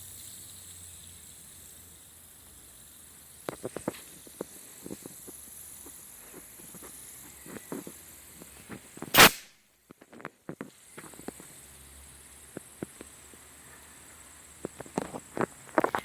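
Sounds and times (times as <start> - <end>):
compressed air blast: 8.2 - 9.6.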